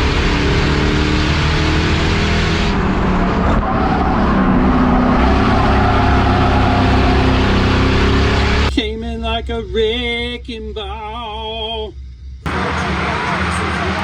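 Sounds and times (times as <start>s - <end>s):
race car engines running: 0.0s - 8.8s, 12.4s - 14.0s.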